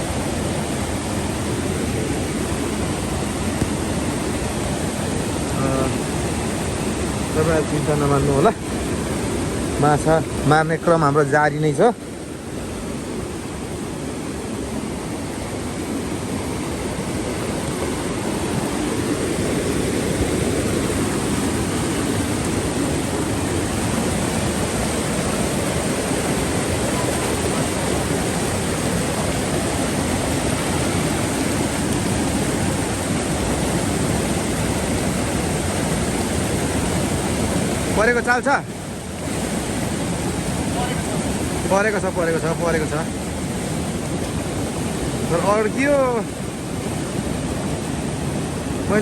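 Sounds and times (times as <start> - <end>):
flooded river rushing: 0.0 - 49.0.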